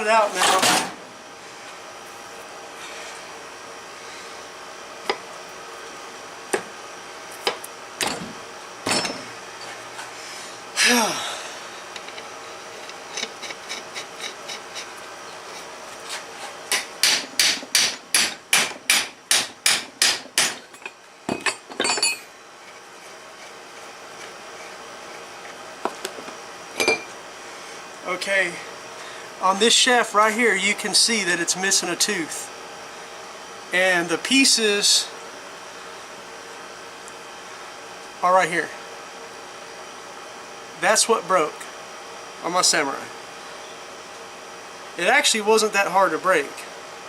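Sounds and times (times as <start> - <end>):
hammer striking metal: 16.7 - 20.6
metal knocks and clinks: 20.7 - 22.3.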